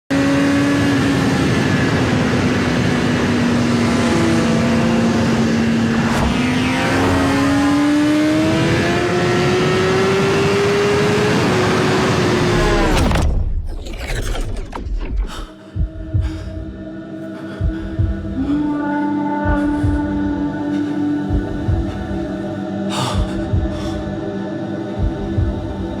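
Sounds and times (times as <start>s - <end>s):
road noise: 0.1s - 13.1s
car engine at high revs: 0.1s - 15.5s.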